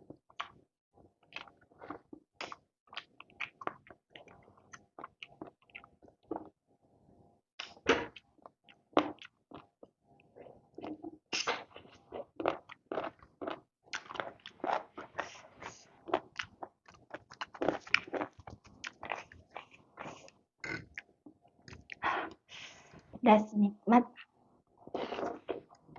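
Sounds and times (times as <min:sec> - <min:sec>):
person chewing crunchy food: 0:01.2 - 0:06.5, 0:10.5 - 0:22.4, 0:24.7 - 0:25.9.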